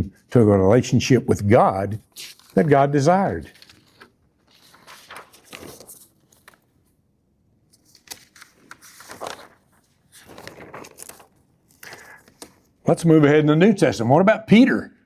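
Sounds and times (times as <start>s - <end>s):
faint rustling and shuffling: 2.1s - 7.0s.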